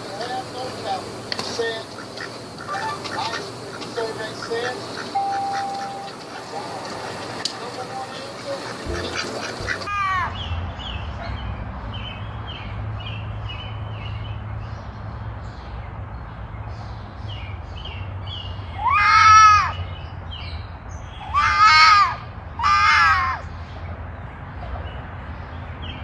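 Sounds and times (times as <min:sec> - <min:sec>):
loud drawn-out animal calls: 0:00.0 - 0:10.4, 0:18.7 - 0:19.9, 0:21.2 - 0:23.5.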